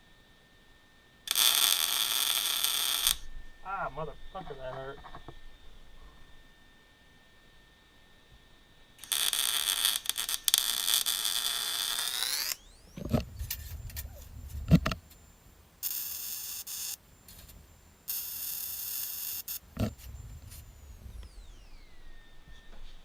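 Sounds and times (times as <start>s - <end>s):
welding arc crackling buzz: 1.2s - 5.6s, 9.0s - 22.2s.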